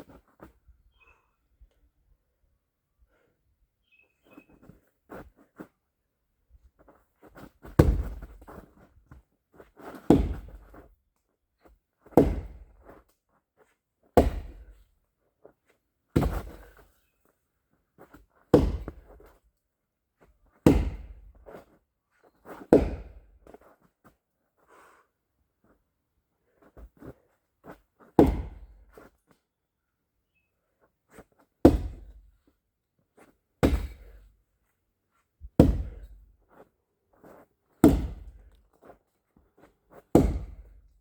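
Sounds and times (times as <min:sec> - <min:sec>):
axe chopping wood: 0:07.7 - 0:08.3, 0:10.1 - 0:10.6, 0:12.2 - 0:12.7, 0:14.2 - 0:14.7, 0:16.2 - 0:16.6, 0:18.5 - 0:19.1, 0:20.6 - 0:21.3, 0:22.7 - 0:23.2, 0:28.2 - 0:28.8, 0:31.6 - 0:32.2, 0:33.6 - 0:34.2, 0:35.6 - 0:36.2, 0:37.8 - 0:38.5, 0:40.1 - 0:40.8.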